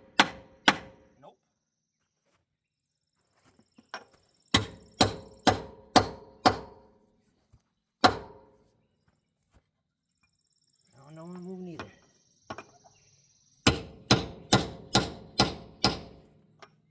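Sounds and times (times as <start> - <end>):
hammer striking metal: 0.0 - 1.0, 13.7 - 16.2.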